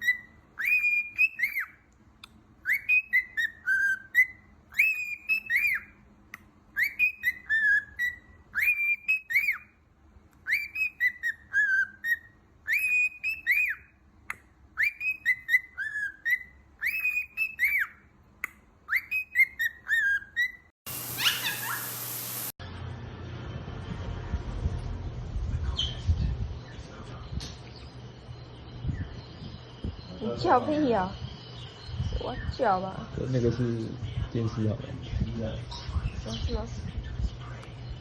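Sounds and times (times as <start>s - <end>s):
bird singing whistled phrase: 0.0s - 1.8s, 2.6s - 6.0s, 6.8s - 9.7s, 10.4s - 13.9s, 14.8s - 18.0s, 18.9s - 21.8s.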